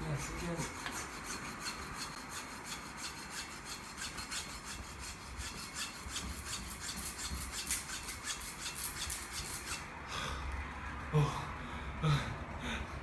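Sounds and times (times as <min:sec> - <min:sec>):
hand saw rasping through frozen fish: 0:00.0 - 0:09.9.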